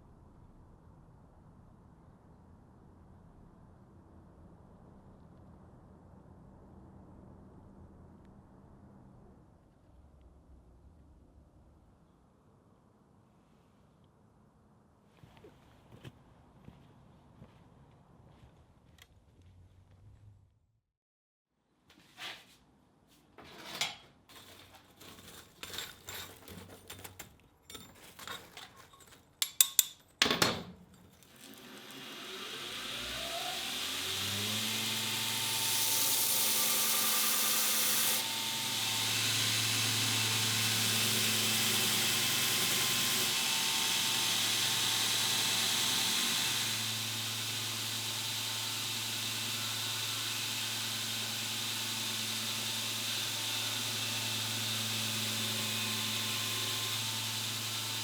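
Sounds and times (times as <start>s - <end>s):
power tool motor running: 31.2s - 58.0s.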